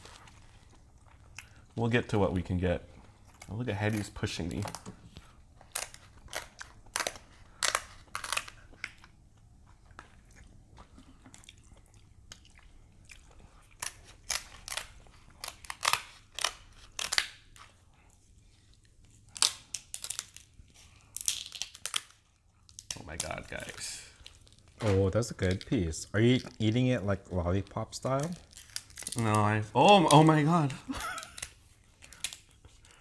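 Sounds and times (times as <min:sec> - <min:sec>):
chewing: 0:00.0 - 0:01.8, 0:08.3 - 0:14.4
crab shell cracking and crunching: 0:05.6 - 0:09.2, 0:12.3 - 0:17.5, 0:19.3 - 0:23.4, 0:28.0 - 0:30.3.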